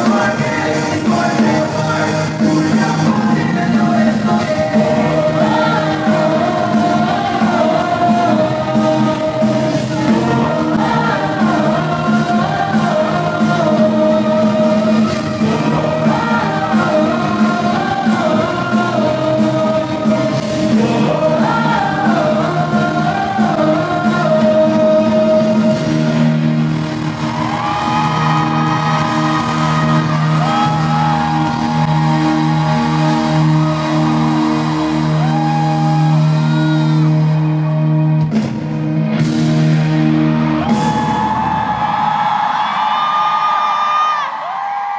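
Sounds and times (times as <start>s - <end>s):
person singing: 0.0s - 26.4s
drums on a steady beat: 0.0s - 36.0s
pop-rock band playing: 0.0s - 42.8s.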